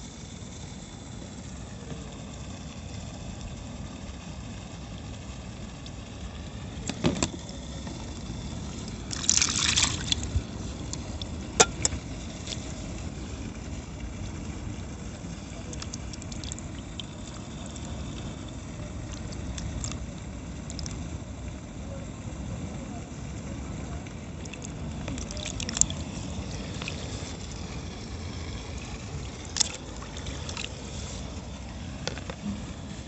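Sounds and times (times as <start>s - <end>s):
low background rumble: 0.0s - 33.0s
water splashing: 7.5s - 12.9s, 15.2s - 21.0s, 24.4s - 33.0s.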